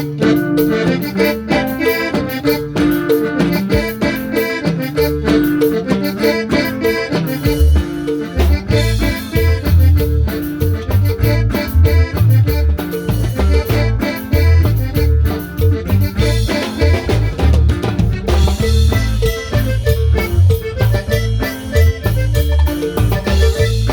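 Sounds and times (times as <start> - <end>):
accordion melody: 0.0 - 23.9
bass line: 0.0 - 23.9.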